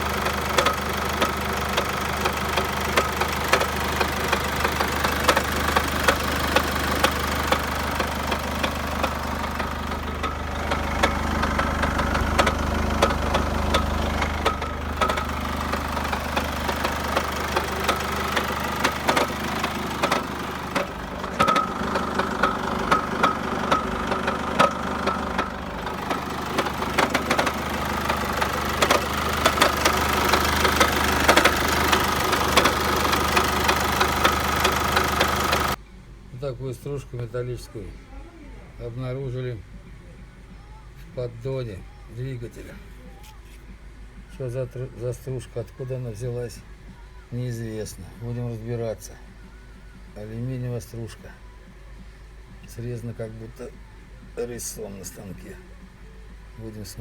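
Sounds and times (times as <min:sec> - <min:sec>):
sharp engine knocks: 0:00.0 - 0:35.8
diesel engine idling: 0:00.0 - 0:57.0.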